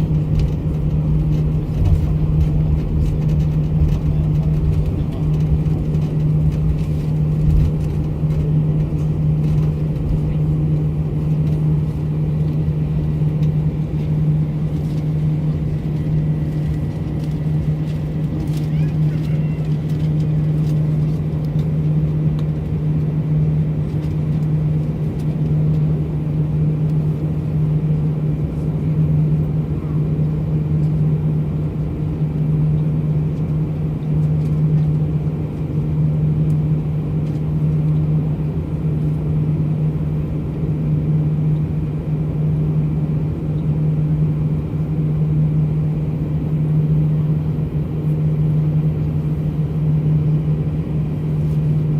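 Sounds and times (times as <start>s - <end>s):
airliner cabin engine drone: 0.0s - 51.9s.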